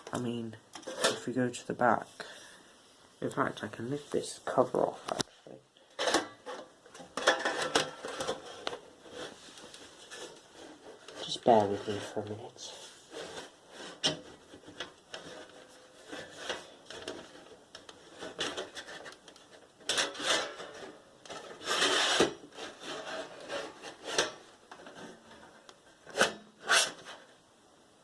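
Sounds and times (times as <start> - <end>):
plastic cover scraping and rubbing: 6.4 - 27.4.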